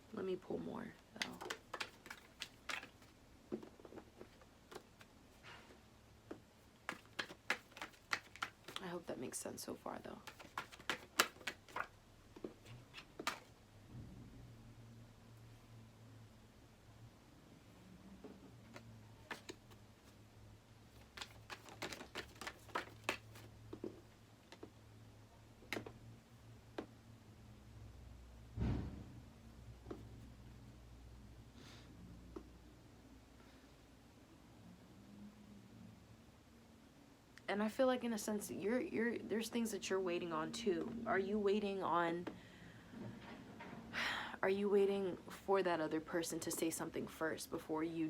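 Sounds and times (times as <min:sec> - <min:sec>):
cards clicking and flicking: 0:01.2 - 0:03.1, 0:06.8 - 0:08.9, 0:10.2 - 0:13.5, 0:18.7 - 0:19.8, 0:21.0 - 0:23.9
faint low hum: 0:23.4 - 0:48.0.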